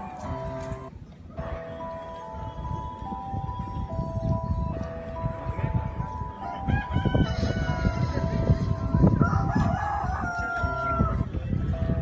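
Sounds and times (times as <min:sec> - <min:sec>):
rooster crowing: 0:06.4 - 0:11.2.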